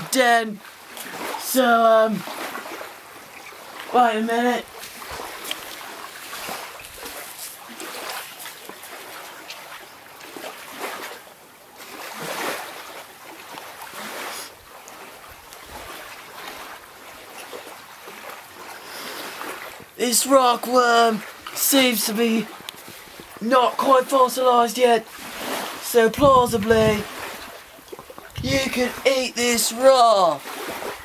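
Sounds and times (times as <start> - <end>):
hands digging in wet mud: 4.8 - 9.8.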